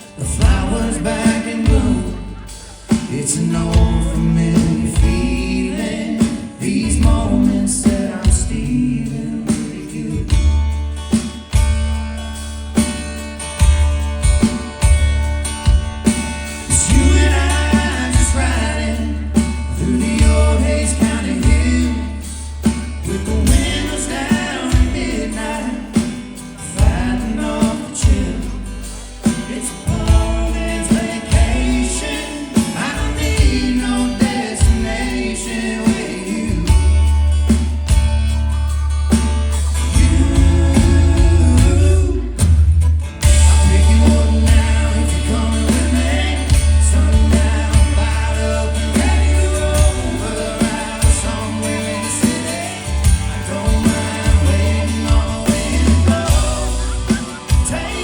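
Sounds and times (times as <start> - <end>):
people singing: 0.0 - 11.6, 14.2 - 38.3, 39.0 - 58.0
drums: 0.0 - 58.0
guitar: 0.0 - 58.0
heavy bass: 0.0 - 58.0.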